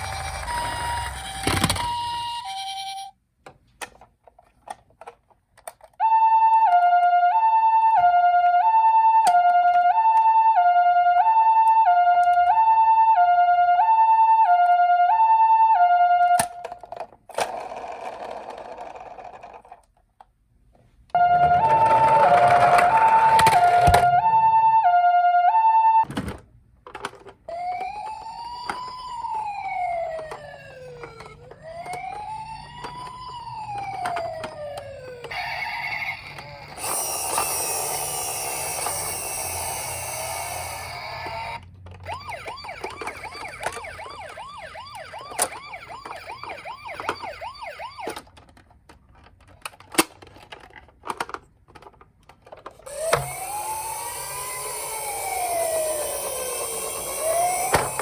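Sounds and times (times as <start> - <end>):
toy siren wailing: 0.0 - 3.1, 6.0 - 16.8, 21.2 - 26.0, 27.5 - 48.3, 52.8 - 58.0
fast warbling siren yelp: 27.5 - 48.2, 52.9 - 58.0.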